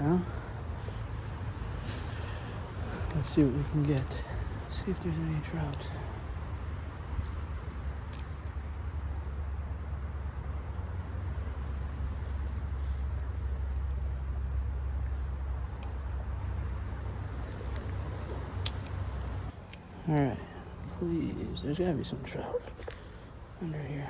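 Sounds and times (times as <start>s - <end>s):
crickets trilling: 0.0s - 24.0s
faint clicks: 5.4s - 6.4s, 12.0s - 16.2s, 17.4s - 23.6s.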